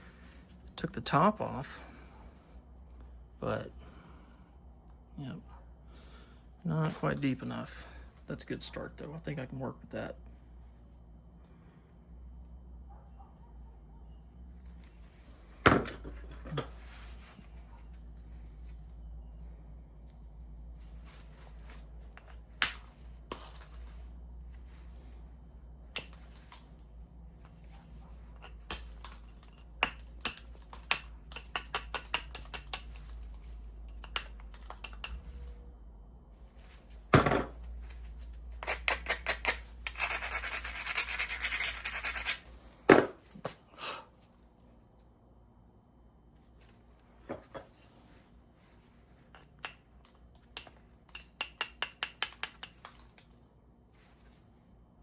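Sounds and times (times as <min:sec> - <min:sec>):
stone tools clicking on flint: 0:50.6 - 0:52.8.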